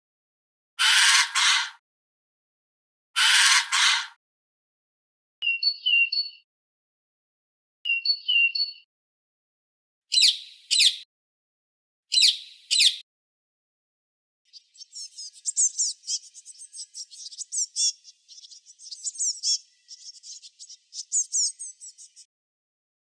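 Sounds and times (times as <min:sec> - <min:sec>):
bird cawing: 0:00.8 - 0:01.8, 0:03.2 - 0:04.2
downward-sweeping bird chirps: 0:05.4 - 0:06.4, 0:07.9 - 0:08.9, 0:10.1 - 0:11.1, 0:12.1 - 0:13.0, 0:14.5 - 0:22.3.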